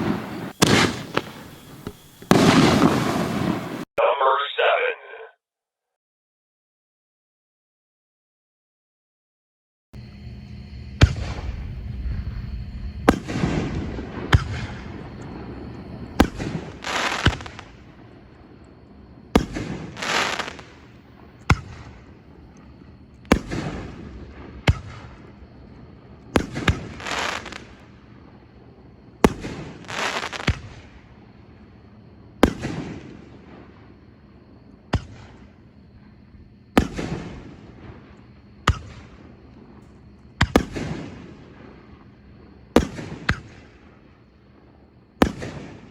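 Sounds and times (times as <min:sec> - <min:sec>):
hissing crackle: 0:00.0 - 0:03.9, 0:14.0 - 0:25.4, 0:29.5 - 0:30.9
firework bangs: 0:00.0 - 0:04.7, 0:11.0 - 0:28.6, 0:29.2 - 0:31.1, 0:32.4 - 0:34.0, 0:34.9 - 0:35.6, 0:36.7 - 0:42.0, 0:42.6 - 0:45.9.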